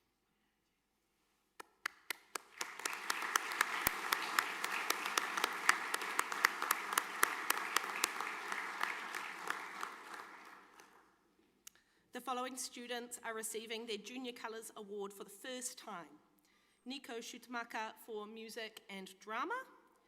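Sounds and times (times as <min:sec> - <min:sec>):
audience applauding: 0:01.8 - 0:11.0.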